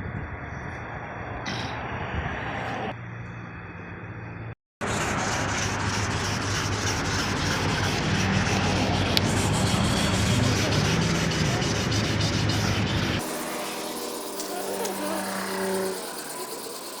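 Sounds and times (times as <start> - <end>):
low hum: 0.0 - 17.0
sandpaper rubbing on plastic: 4.8 - 17.0.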